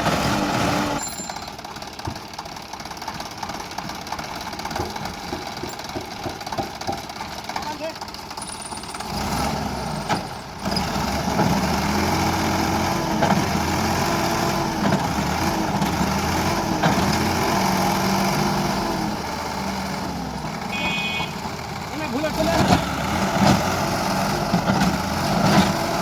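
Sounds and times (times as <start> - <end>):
diesel engine revving under load: 0.0 - 26.0.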